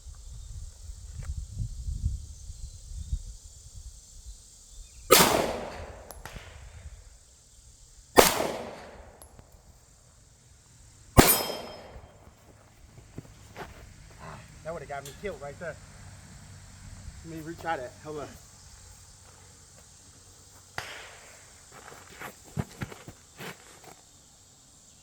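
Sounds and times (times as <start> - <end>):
handgun shots echoing: 5.1 - 6.4, 8.2 - 9.4, 11.2 - 12.2.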